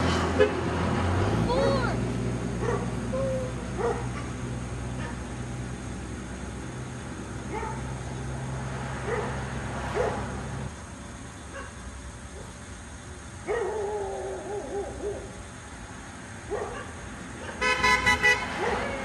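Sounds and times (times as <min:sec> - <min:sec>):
dog barking in yips: 0:02.6 - 0:02.9, 0:03.8 - 0:04.3, 0:07.5 - 0:07.8, 0:13.5 - 0:15.3, 0:16.5 - 0:17.6, 0:18.6 - 0:19.0.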